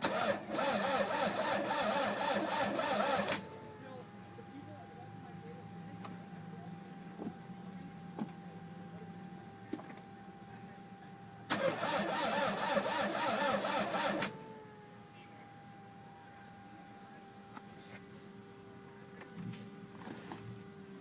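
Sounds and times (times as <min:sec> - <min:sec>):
starter cranking engine: 0:00.0 - 0:03.4, 0:11.5 - 0:14.4
faint steady whine: 0:00.0 - 0:21.0.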